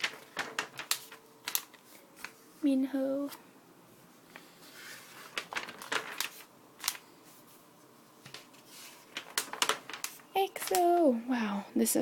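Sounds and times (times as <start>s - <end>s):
pages flicking and slapping: 0.0s - 2.4s, 4.3s - 7.1s, 8.2s - 11.0s
magazine pages rustling: 0.0s - 2.6s, 4.2s - 11.0s.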